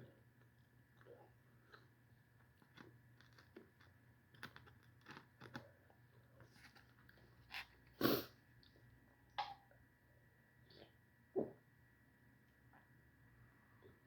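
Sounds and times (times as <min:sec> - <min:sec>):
chewing with small clicks: 0:00.4 - 0:07.3.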